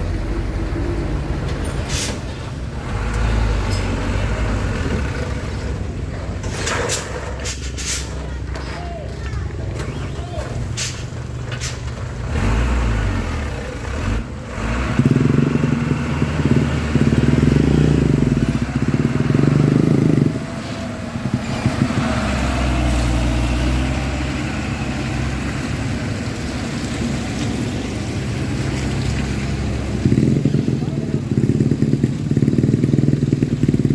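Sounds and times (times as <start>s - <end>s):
vehicle engine running: 28.0s - 33.9s.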